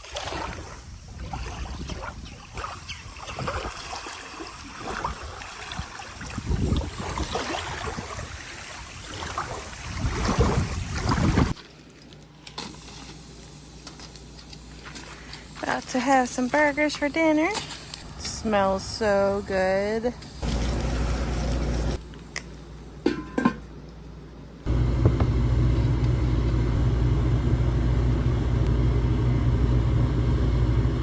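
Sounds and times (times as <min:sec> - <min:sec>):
water washing at shore: 0:00.0 - 0:11.9
wind blowing on microphone: 0:04.7 - 0:11.5.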